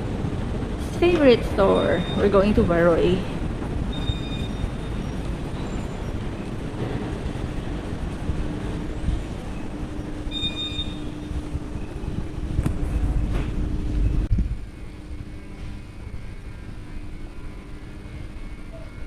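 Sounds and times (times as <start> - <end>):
faint hum: 0.0 - 19.0
low rumbling background noise: 0.0 - 19.0
short high beeps: 10.3 - 11.2.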